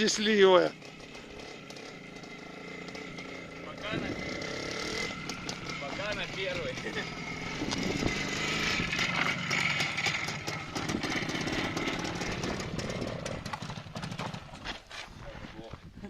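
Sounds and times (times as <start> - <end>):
motorcycle engine buzzing: 0.0 - 14.7.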